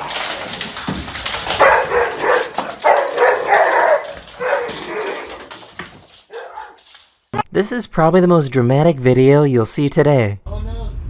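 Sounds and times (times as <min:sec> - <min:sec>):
dog barking and whining: 0:01.4 - 0:05.6, 0:06.3 - 0:06.9.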